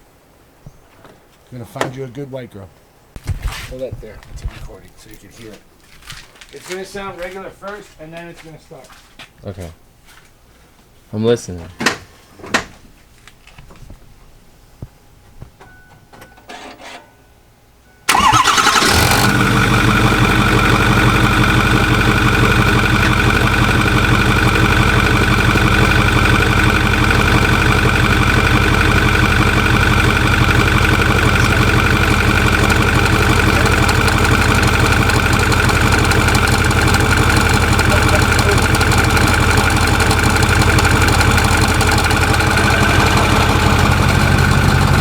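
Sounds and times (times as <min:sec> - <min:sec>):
diesel engine starting and idling: 0:18.1 - 0:45.0.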